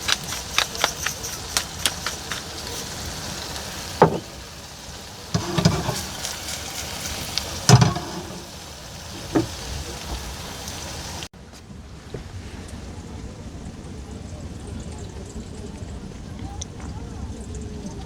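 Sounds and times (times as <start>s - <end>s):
utensil scraping a pan: 0.0s - 4.6s, 5.3s - 10.6s
food sizzling in a pan: 0.0s - 11.3s.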